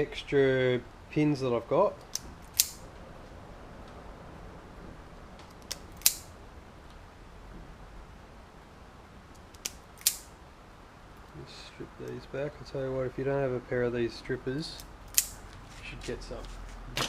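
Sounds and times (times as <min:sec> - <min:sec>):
low room hum: 0:00.0 - 0:17.0
wire cutter snips: 0:02.0 - 0:02.8, 0:05.6 - 0:06.3, 0:09.4 - 0:10.3, 0:15.1 - 0:15.4.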